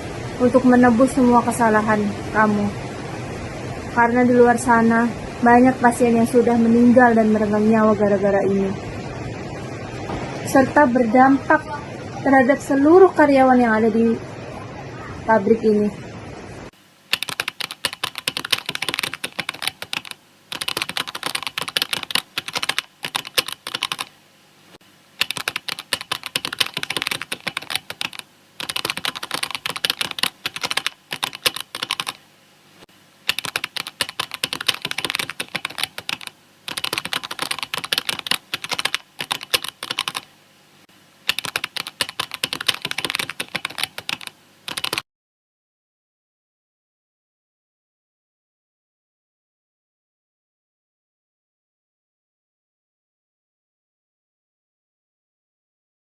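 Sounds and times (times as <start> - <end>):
computer keyboard typing: 17.1 - 24.2, 25.2 - 32.2, 33.3 - 40.3, 41.2 - 45.0.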